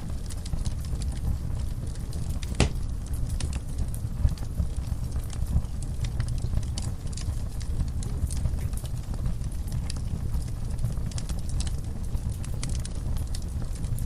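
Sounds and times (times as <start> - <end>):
fire rumbling in fireplace: 0.0 - 14.0
wood fire crackling: 0.0 - 14.0
loud pop of fire: 2.4 - 3.3.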